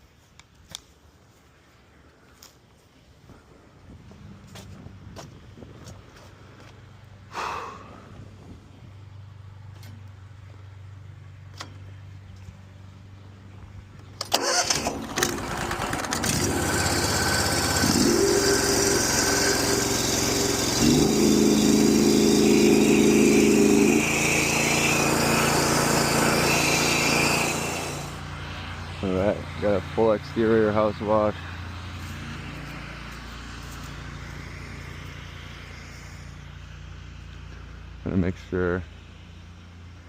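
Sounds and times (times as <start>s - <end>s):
pressure washer engine running: 14.4s - 33.6s
hissing water spray: 17.9s - 28.2s.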